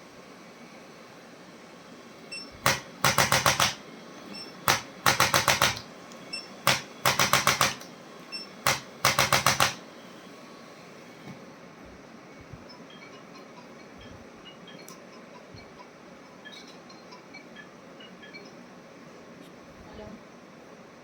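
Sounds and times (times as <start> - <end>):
faint beep: 16.4 - 18.7.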